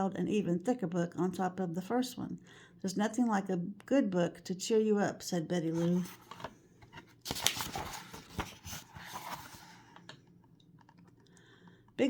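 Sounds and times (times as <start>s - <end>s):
paper page rustling: 5.7s - 10.1s.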